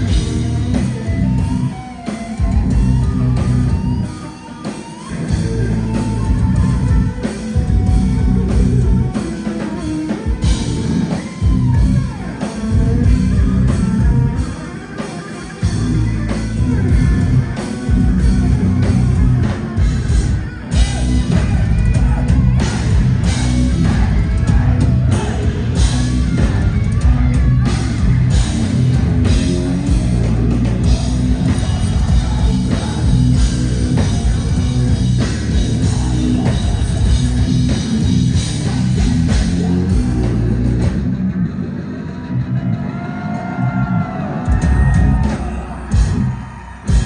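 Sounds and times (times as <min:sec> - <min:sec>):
heavy metal band playing live: 0:00.0 - 0:47.0
vocals: 0:16.6 - 0:41.0, 0:41.8 - 0:47.0.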